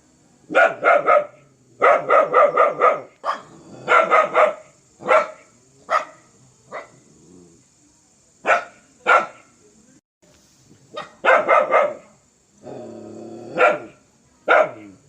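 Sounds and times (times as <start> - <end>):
dog barking fiercely: 0.5 - 7.0, 8.4 - 9.5, 10.9 - 12.2, 13.5 - 15.0.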